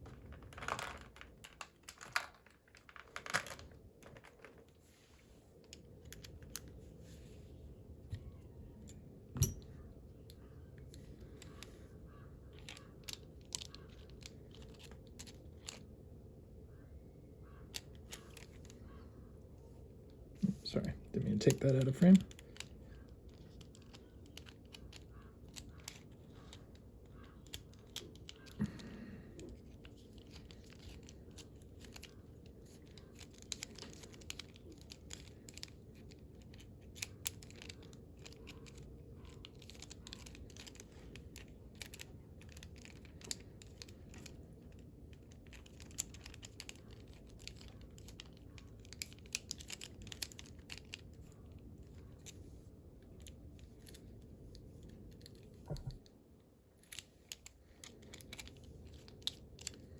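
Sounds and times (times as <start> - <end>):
steady low hum: 3.7 - 59.9
small metal clicks and scrapes: 12.5 - 15.9, 21.2 - 28.7, 29.4 - 55.6.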